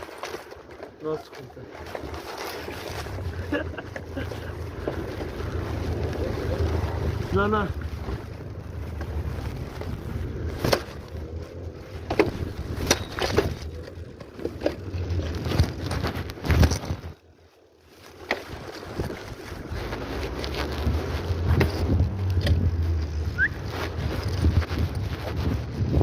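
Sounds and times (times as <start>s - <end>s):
bicycle knocks and rattles: 0.0s - 17.3s, 17.9s - 23.0s
wind buffeting microphone: 18.6s - 26.0s.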